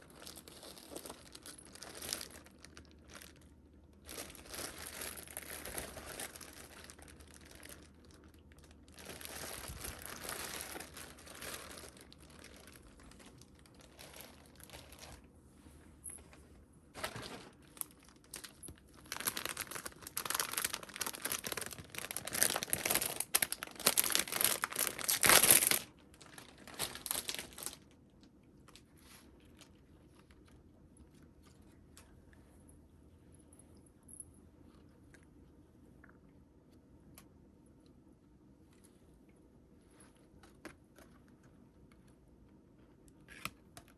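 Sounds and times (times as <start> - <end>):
packaging crinkling and rustling: 0.0 - 15.3, 16.9 - 28.0.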